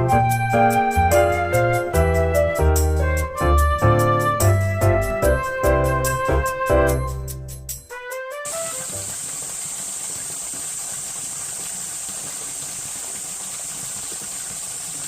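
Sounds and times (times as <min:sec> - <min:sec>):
stream running over rocks: 0:08.5 - 0:15.0.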